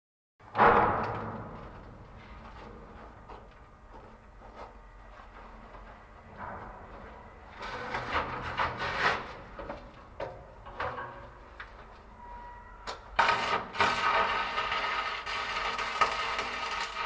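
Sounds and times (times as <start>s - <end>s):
scraping and knocks on metal: 0.5s - 17.0s
welding arc crackling hiss: 13.2s - 17.0s.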